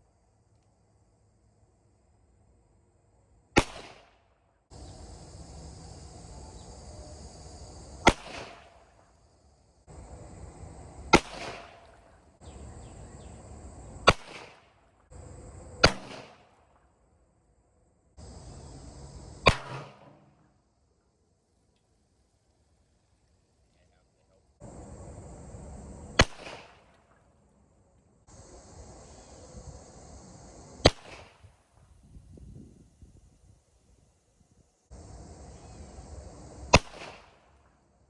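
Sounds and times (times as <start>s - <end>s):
revolver shots with echo: 11.2s - 12.0s, 15.8s - 16.4s, 19.5s - 20.3s
steady hiss: 28.2s - 38.0s.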